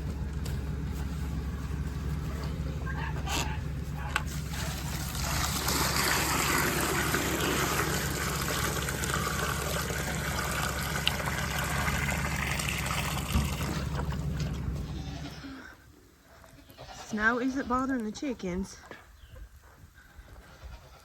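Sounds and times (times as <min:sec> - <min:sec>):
engine running: 0:00.0 - 0:15.6
water pouring into a container: 0:05.1 - 0:14.1.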